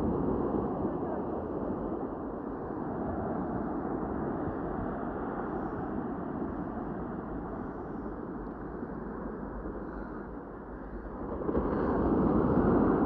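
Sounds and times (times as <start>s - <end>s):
wind rumbling on microphone: 0.0s - 13.0s
ocean surf washing ashore: 10.4s - 13.0s.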